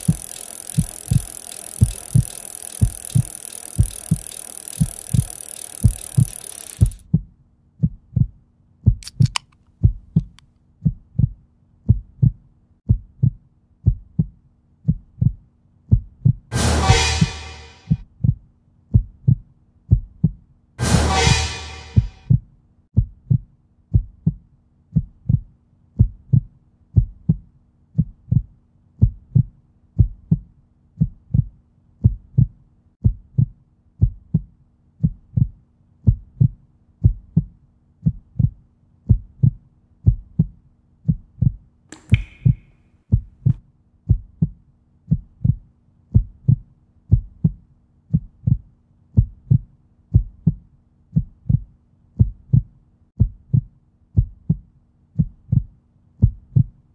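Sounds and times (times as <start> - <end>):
heartbeat thuds: 6.9 - 9.0, 9.8 - 16.5, 17.9 - 20.5, 22.0 - 56.8.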